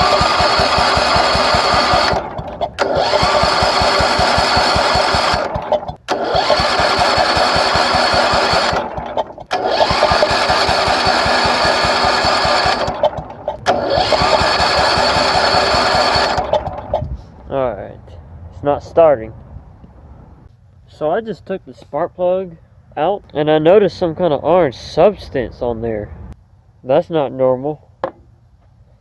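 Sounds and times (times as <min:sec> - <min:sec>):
engine cranking by starter: 0:00.0 - 0:17.3.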